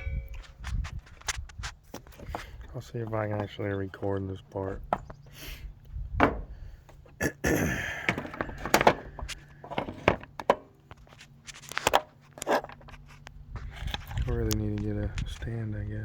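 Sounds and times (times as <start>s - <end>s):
handling thunks and clicks: 0.3s - 5.2s, 8.0s - 15.6s
scraping rustle: 10.9s - 15.8s.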